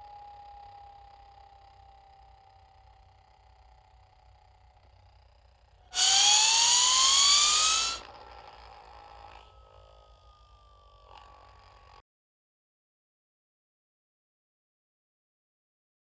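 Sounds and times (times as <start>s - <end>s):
comedy whine rising in pitch: 6.0s - 8.1s.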